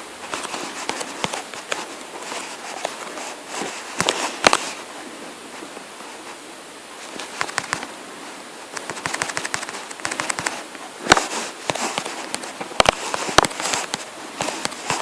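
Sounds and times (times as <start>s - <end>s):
sharp clicks and taps: 7.3s - 7.9s, 8.8s - 15.0s.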